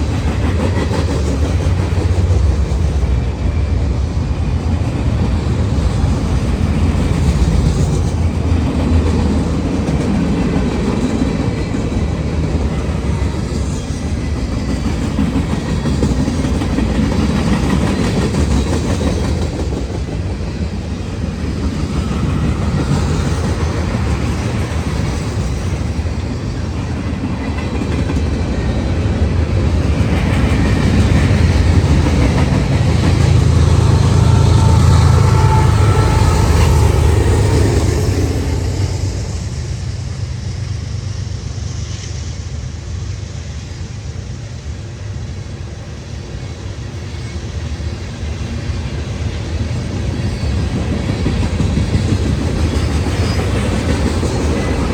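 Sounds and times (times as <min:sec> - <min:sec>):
wheels clacking over rail joints: 0:04.4 - 0:39.6
freight cars rumbling: 0:19.6 - 0:41.4.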